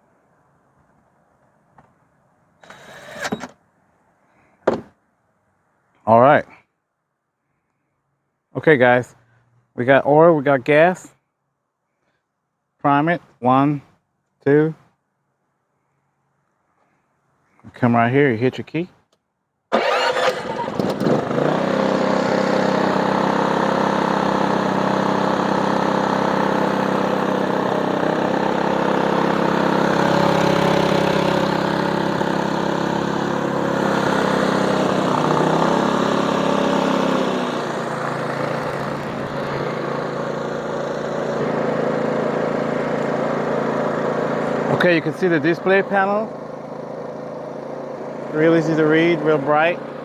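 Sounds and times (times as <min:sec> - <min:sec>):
generator engine running: 0:19.7 - 0:50.0.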